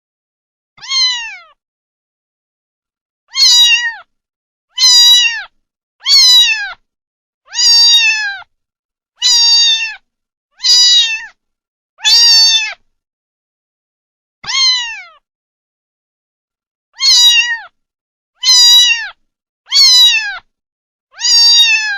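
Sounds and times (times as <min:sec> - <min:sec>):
kitten meowing: 0:00.8 - 0:01.6, 0:03.3 - 0:04.1, 0:04.7 - 0:06.8, 0:07.5 - 0:08.5, 0:09.2 - 0:10.0, 0:10.6 - 0:11.4, 0:12.0 - 0:12.8, 0:14.4 - 0:15.2, 0:17.0 - 0:17.8, 0:18.4 - 0:20.5, 0:21.1 - 0:21.9.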